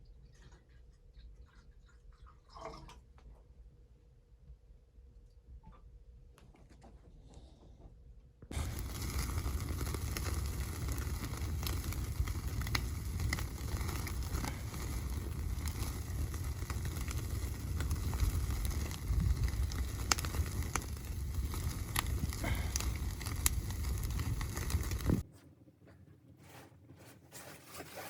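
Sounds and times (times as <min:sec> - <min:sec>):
low rumble: 0:08.5 - 0:25.2
sharp pops of fire: 0:08.5 - 0:25.2
wood fire crackling: 0:08.5 - 0:25.4.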